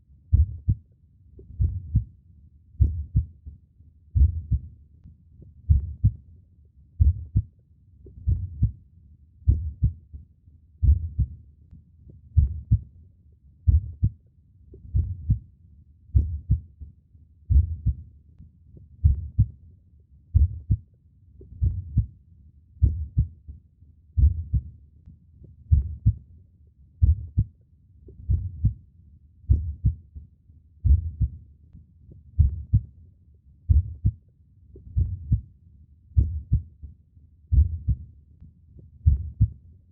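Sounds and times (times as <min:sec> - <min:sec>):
heartbeat thumps: 0:00.3 - 0:00.8, 0:01.4 - 0:02.1, 0:02.8 - 0:03.3, 0:04.2 - 0:04.7, 0:05.6 - 0:06.2, 0:07.0 - 0:07.5, 0:08.1 - 0:08.8, 0:09.5 - 0:10.0, 0:10.8 - 0:11.4, 0:12.3 - 0:12.8, 0:13.7 - 0:14.2, 0:14.8 - 0:15.4, 0:16.1 - 0:16.7, 0:17.5 - 0:18.0, 0:19.0 - 0:19.5, 0:20.3 - 0:20.8, 0:21.5 - 0:22.1, 0:22.8 - 0:23.4, 0:24.2 - 0:24.7, 0:25.7 - 0:26.2, 0:27.0 - 0:27.5, 0:28.2 - 0:28.8, 0:29.5 - 0:30.0, 0:30.8 - 0:31.4, 0:32.4 - 0:32.9, 0:33.7 - 0:34.2, 0:34.8 - 0:35.4, 0:36.2 - 0:36.7, 0:37.5 - 0:38.0, 0:39.0 - 0:39.6.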